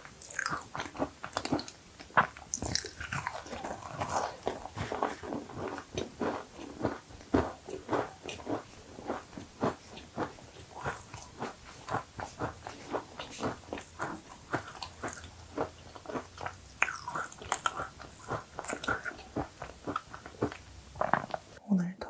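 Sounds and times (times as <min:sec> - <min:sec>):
cookie being chewed: 0:00.0 - 0:21.6.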